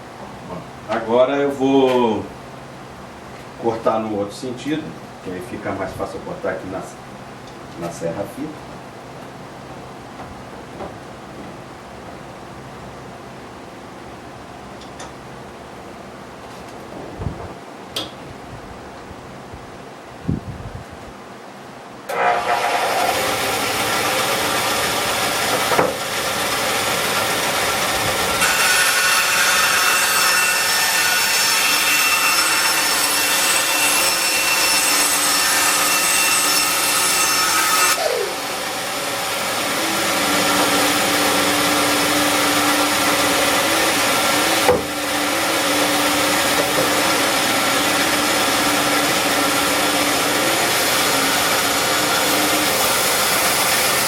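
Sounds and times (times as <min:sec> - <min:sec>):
band saw cutting: 0:22.1 - 0:54.0.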